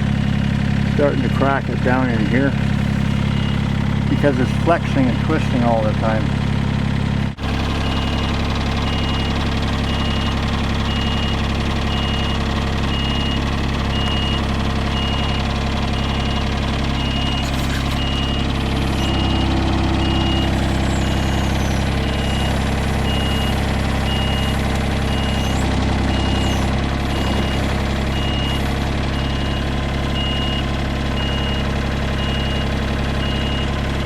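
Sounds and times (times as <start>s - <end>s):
engine idling: 0.0s - 34.0s
high-pitched beep: 3.1s - 3.7s, 7.8s - 30.6s.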